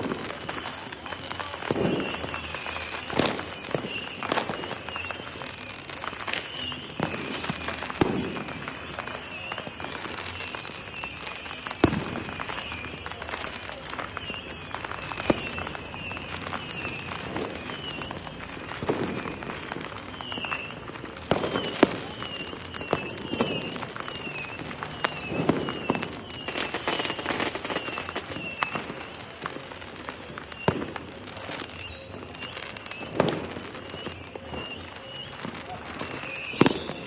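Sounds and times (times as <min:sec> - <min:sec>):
firecrackers banging and crackling: 0:00.0 - 0:37.0
deep firework booms: 0:06.8 - 0:08.9, 0:14.4 - 0:29.0.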